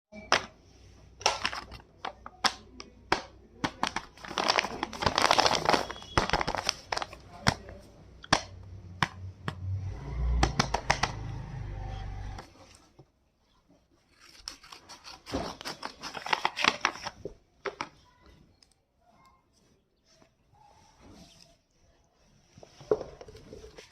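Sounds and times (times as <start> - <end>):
packaging crinkling and rustling: 1.2 - 2.6, 3.6 - 7.8, 14.0 - 18.0.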